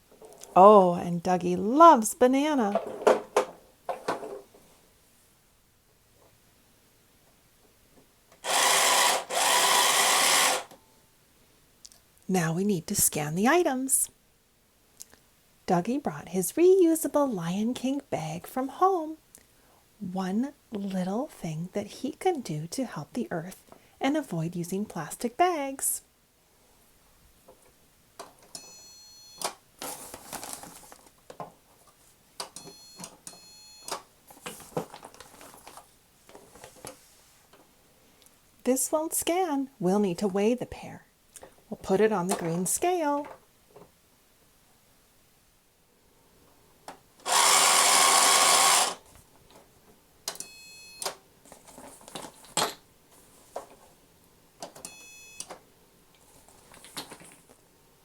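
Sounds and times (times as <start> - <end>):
toy scanner beeping: 8.4 - 10.7, 47.3 - 49.0, 50.4 - 51.1, 54.8 - 55.5
clicks and rustling of toys: 29.4 - 37.7, 51.0 - 54.0, 54.6 - 57.6.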